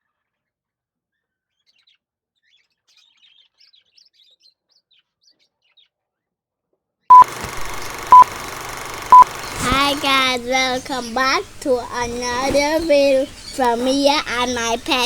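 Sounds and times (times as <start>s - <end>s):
short electronic beep: 7.1s - 8.3s.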